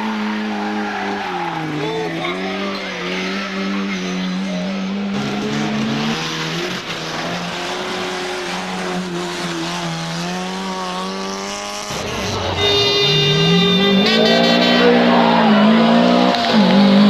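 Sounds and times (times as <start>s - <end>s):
engine accelerating hard: 0.0s - 17.0s
racing car engine at high revs: 0.0s - 17.0s.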